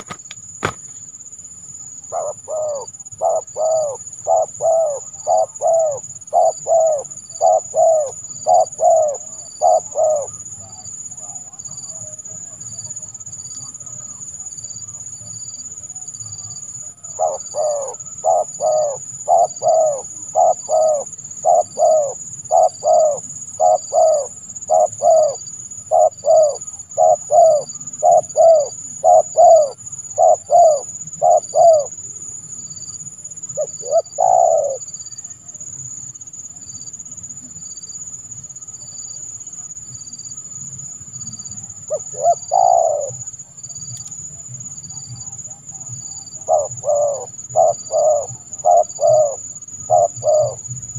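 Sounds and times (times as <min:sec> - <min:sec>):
dove cooing: 0:02.0 - 0:12.1, 0:16.7 - 0:32.2, 0:33.4 - 0:35.0, 0:41.8 - 0:43.5, 0:45.2 - 0:50.9.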